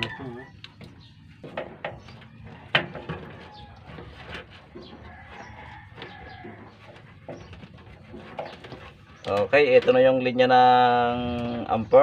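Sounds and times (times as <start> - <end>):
rooster crowing faintly: 0.0 - 0.6
chickens clucking: 0.0 - 10.1
sharp clicks and knocks: 0.6 - 10.0.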